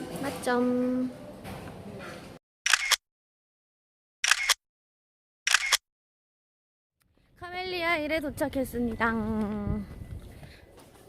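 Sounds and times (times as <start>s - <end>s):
camera shutter clicks: 2.7s - 3.0s, 4.2s - 4.6s, 5.5s - 5.8s.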